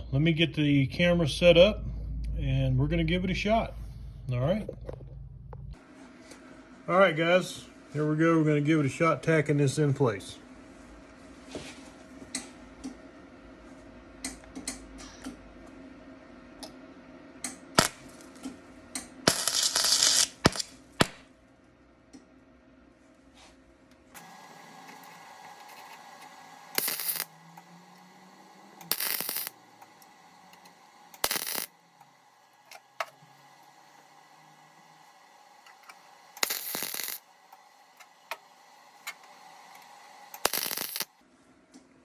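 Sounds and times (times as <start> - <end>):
welder crackling: 17.8 - 18.4, 19.3 - 21.2, 24.2 - 41.2.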